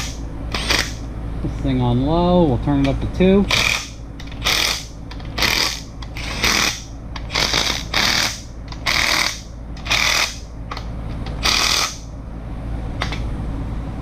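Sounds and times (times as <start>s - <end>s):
power driver driving bolts: 0.0s - 1.0s, 2.8s - 12.0s.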